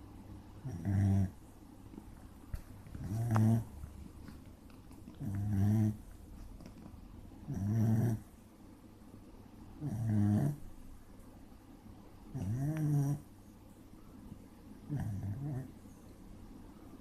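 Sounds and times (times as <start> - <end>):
pet snoring: 0.6 - 1.4, 2.9 - 3.8, 5.1 - 6.2, 7.4 - 8.3, 9.8 - 10.7, 12.3 - 13.3, 14.9 - 15.8.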